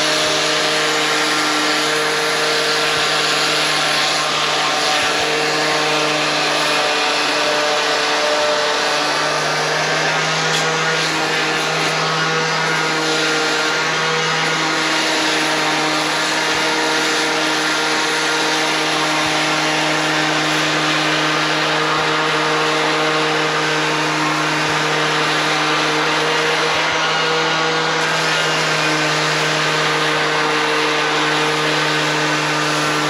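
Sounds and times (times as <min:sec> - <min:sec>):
power sander on metal: 0:00.0 - 0:33.0.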